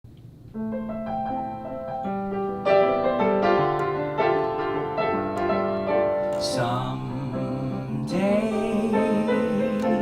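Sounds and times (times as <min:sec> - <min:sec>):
piano broken chords: 0:00.4 - 0:10.0.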